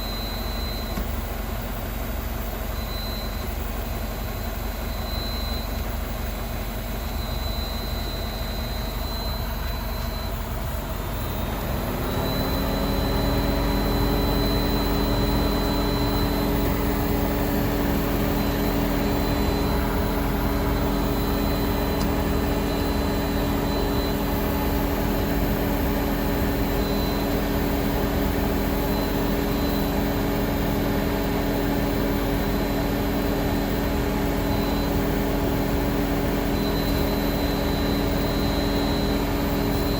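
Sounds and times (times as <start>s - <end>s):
constant low hum: 0.0s - 39.9s
multi-tone whine from fuel tank: 0.0s - 39.9s.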